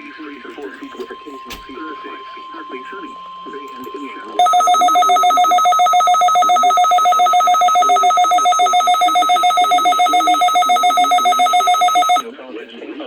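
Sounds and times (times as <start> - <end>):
weather radio alert alarm trill: 4.4 - 12.2.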